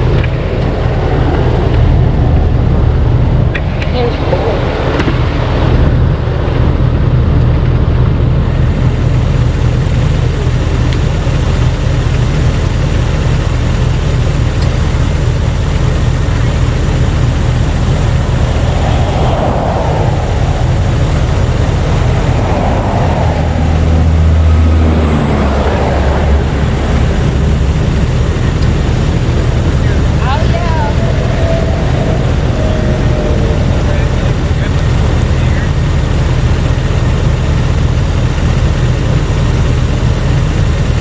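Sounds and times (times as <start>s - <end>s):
rushing swells: 0.0s - 7.2s, 16.6s - 38.7s
road noise: 0.0s - 41.0s
vehicle engine running: 0.0s - 41.0s.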